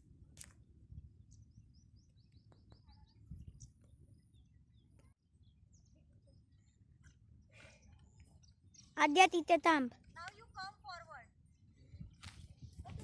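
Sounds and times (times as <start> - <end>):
faint bird chirping: 1.2 - 9.5.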